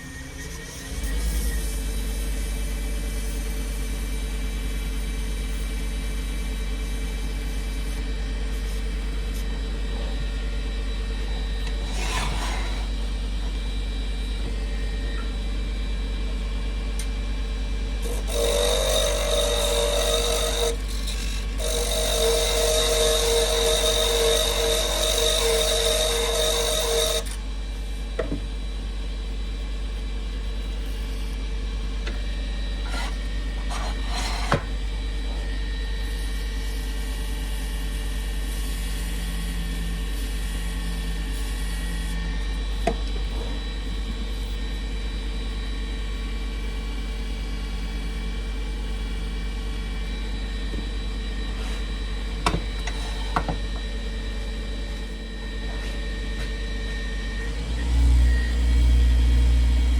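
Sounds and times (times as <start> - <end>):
wood lathe motor hum: 11.3 - 13.5, 18.0 - 27.4
tool scraping spinning wood: 11.7 - 13.0, 18.0 - 27.3, 32.8 - 34.8.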